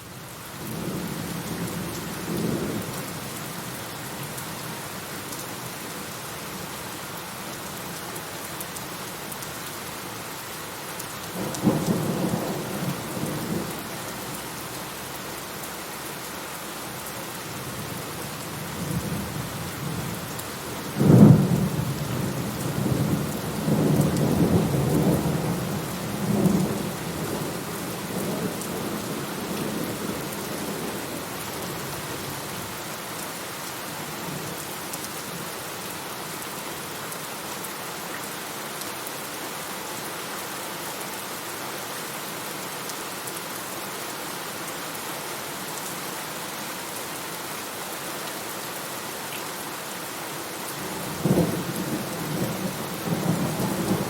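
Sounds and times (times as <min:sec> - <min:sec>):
heavy rain: 0:00.0 - 0:54.0
thunder rumbling: 0:51.0 - 0:54.0.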